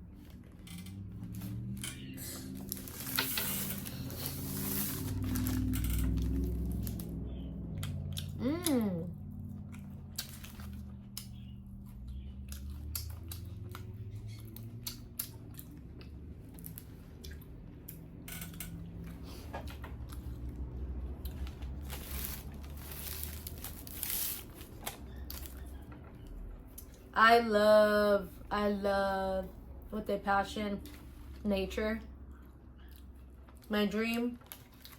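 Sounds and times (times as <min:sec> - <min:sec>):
low steady hum: 0:00.0 - 0:34.9
rustling noise: 0:02.5 - 0:06.4, 0:21.4 - 0:25.5
wet chewing: 0:04.0 - 0:18.2.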